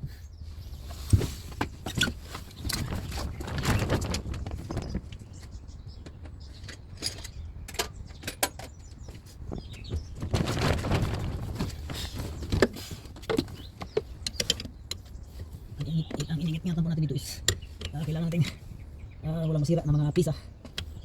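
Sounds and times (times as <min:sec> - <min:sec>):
hand tools clinking and knocking: 0:01.8 - 0:09.3, 0:12.0 - 0:18.7.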